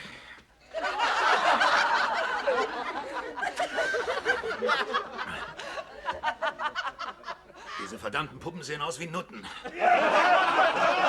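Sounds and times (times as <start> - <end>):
studio audience laughing: 0.8 - 7.9, 9.7 - 11.0.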